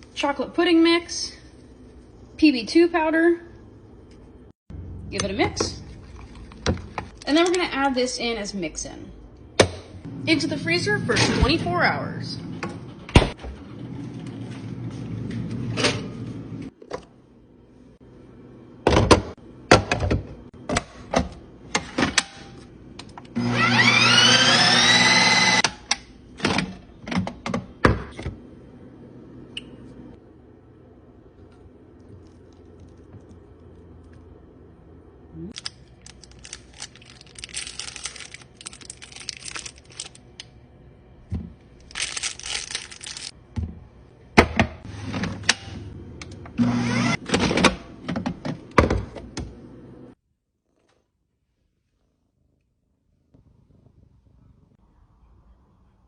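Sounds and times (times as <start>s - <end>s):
ice cream machine motor whine: 23.2s - 26.6s, 45.1s - 47.7s.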